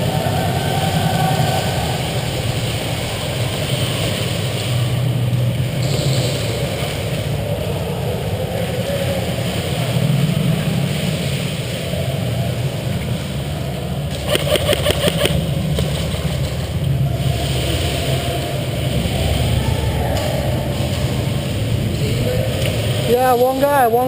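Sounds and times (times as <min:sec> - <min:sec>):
low rumble: 0:00.0 - 0:24.0
airsoft gun rapid shots: 0:14.2 - 0:15.4.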